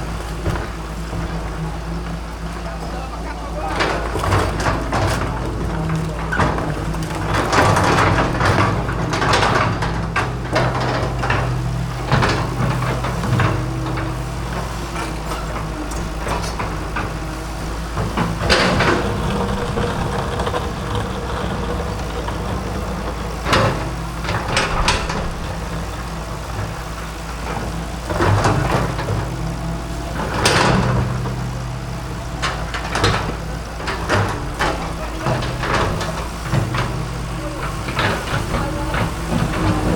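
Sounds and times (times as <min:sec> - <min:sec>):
excavator diesel engine running: 0:00.0 - 0:39.9
bucket scraping and crunching: 0:12.5 - 0:26.0.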